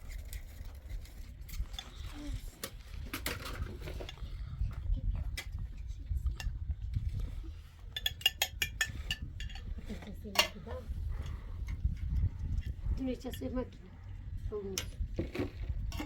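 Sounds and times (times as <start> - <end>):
steady low rumble: 4.1 - 16.0
hard objects clinking: 7.9 - 10.7.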